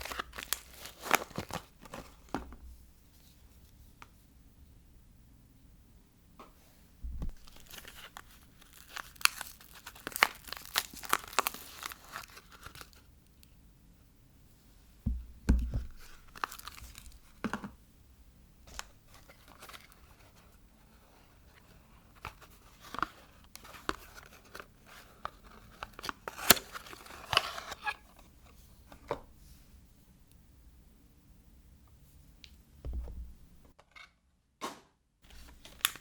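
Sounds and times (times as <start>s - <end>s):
wrapping crinkling and tearing: 0.0s - 2.2s, 7.4s - 13.1s, 15.9s - 17.4s, 21.5s - 28.0s, 35.3s - 36.0s
soft low thump: 7.0s - 7.4s, 15.1s - 15.9s, 32.8s - 33.5s.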